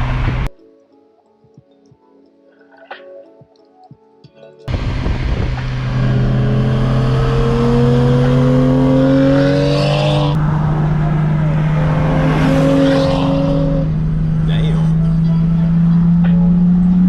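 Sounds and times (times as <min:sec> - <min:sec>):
car engine accelerating: 0:00.0 - 0:00.5, 0:04.7 - 0:17.0
low steady drone: 0:04.7 - 0:09.4, 0:10.2 - 0:17.0.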